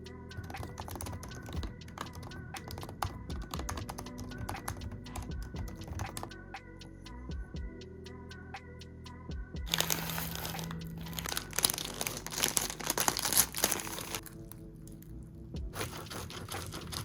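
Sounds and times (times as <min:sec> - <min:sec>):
background music: 0:00.0 - 0:17.0
typing on computer keyboard: 0:00.4 - 0:06.4.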